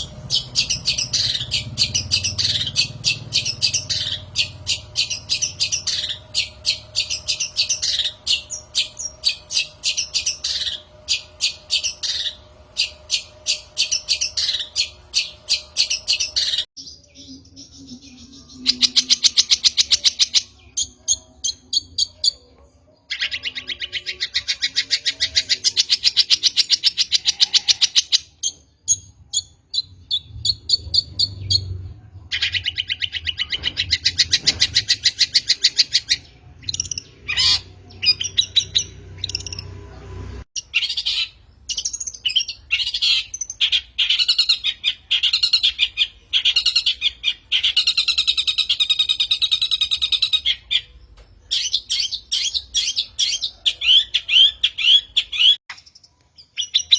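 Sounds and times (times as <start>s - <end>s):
bird singing rattling trills: 0.0s - 22.4s, 40.6s - 56.9s.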